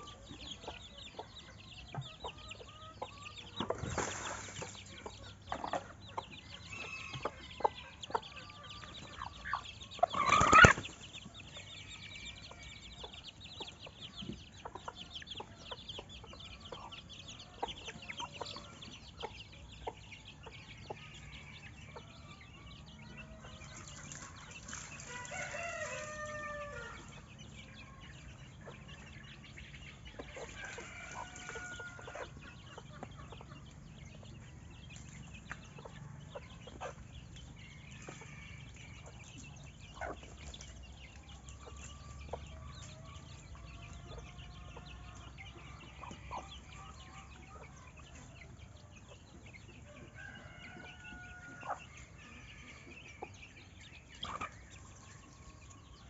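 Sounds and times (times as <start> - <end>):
chickens clucking: 0.0 - 56.0
chicken squawk: 10.1 - 10.8
rooster crowing: 25.1 - 27.1.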